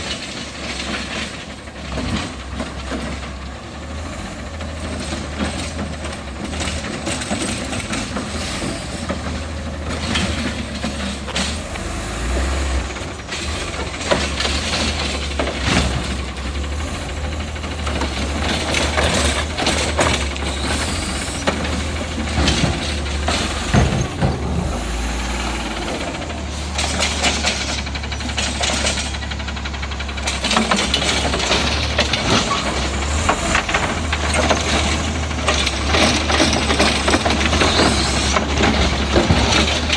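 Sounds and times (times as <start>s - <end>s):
garbage truck engine running: 0.0s - 39.9s
mechanical arm clanking: 9.9s - 39.9s.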